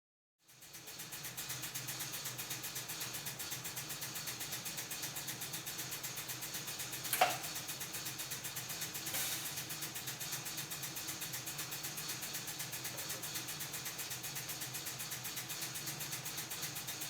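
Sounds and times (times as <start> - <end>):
welding machine pulsing hum: 0.5 - 17.0
short hiss: 9.0 - 9.7.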